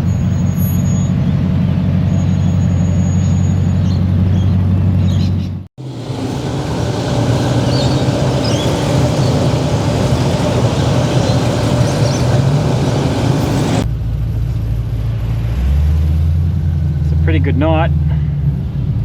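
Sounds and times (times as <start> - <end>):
street traffic: 0.0 - 19.0
car engine humming: 5.8 - 13.8.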